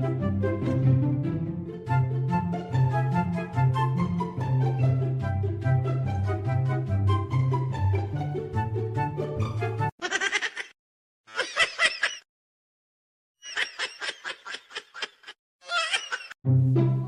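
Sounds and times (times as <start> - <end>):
high-pitched laughter-like vocal: 10.0 - 10.7, 11.3 - 12.2, 13.4 - 16.4.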